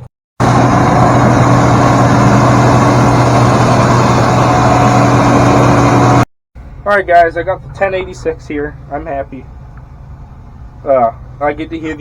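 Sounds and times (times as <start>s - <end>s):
tractor engine running: 0.4s - 6.3s.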